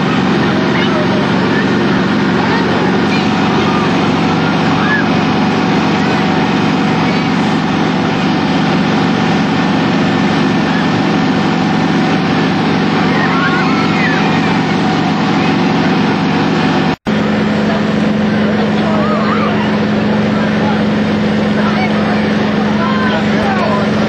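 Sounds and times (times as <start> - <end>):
fire truck pumps roaring: 0.0 - 24.0
water streams spraying: 0.0 - 24.0
faint gliding squeals: 12.8 - 15.5.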